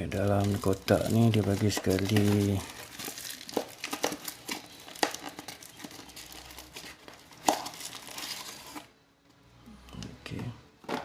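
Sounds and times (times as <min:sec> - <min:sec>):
packaging crinkling: 0:00.1 - 0:08.9.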